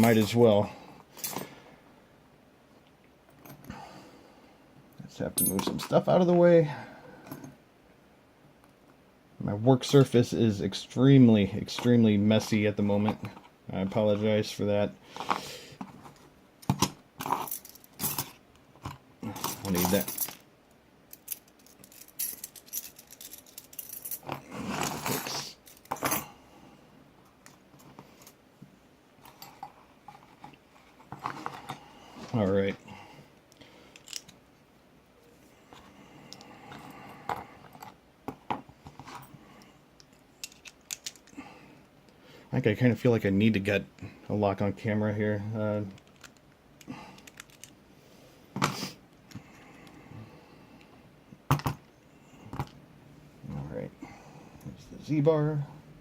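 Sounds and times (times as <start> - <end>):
metal tools clinking: 5.3 - 6.0, 19.3 - 20.4, 21.1 - 26.3
metal tools clicking and clacking: 21.1 - 24.4, 40.0 - 41.3.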